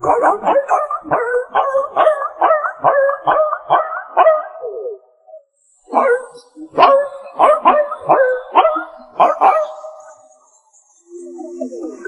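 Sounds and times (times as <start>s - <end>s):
dog yelping barks: 0.0s - 4.9s, 5.9s - 10.0s.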